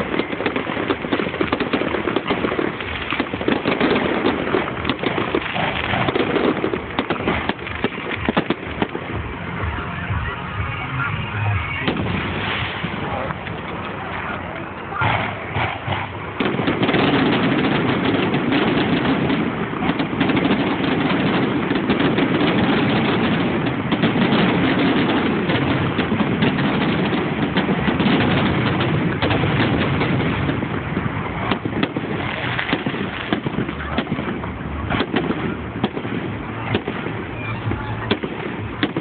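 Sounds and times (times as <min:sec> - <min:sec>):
fireworks bangs and crackles: 0:00.0 - 0:39.0.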